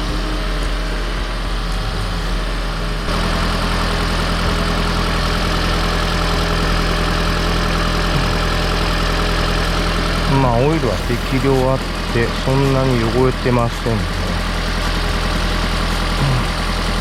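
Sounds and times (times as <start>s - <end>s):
car engine idling: 0.0s - 17.0s
hissing machine noise: 0.0s - 17.0s.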